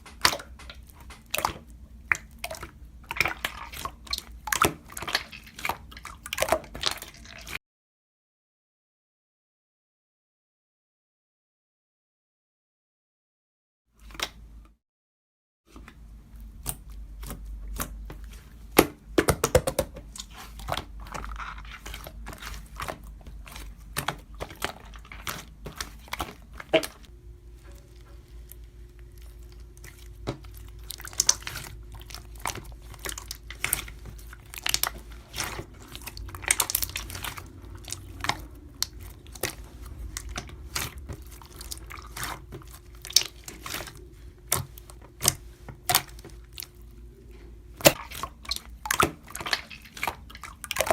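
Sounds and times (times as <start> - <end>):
faint steady hum: 15.7 - 50.8.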